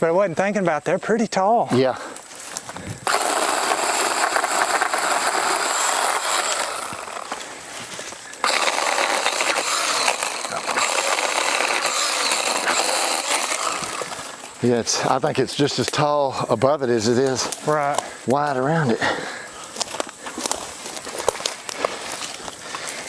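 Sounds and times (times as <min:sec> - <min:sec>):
power saw cutting limbs: 0:03.0 - 0:19.4.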